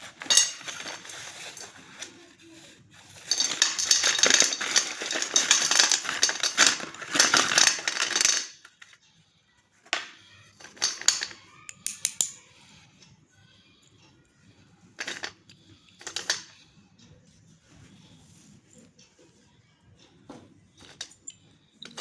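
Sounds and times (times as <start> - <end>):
packaging crackling and rattling: 0.0 - 2.2, 3.1 - 8.8, 10.0 - 11.4
clicks and rustles: 0.0 - 9.0, 9.9 - 12.3.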